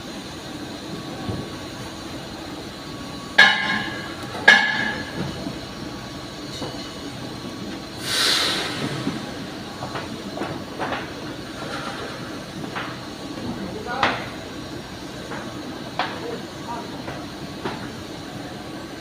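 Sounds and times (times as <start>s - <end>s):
workshop background noise: 0.0s - 19.0s
short hiss: 8.0s - 9.1s.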